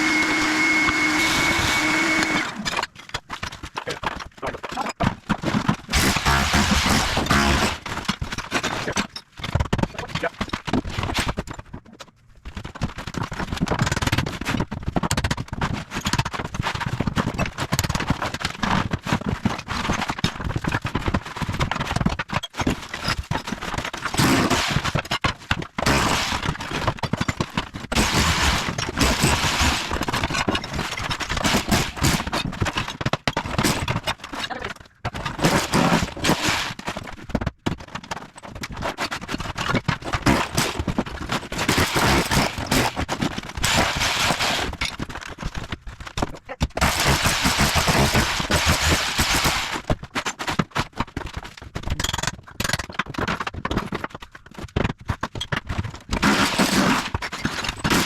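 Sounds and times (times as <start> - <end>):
tile cracking and breaking: 1.6 - 58.0
rotary hammer chiselling: 5.9 - 8.0, 27.3 - 32.4.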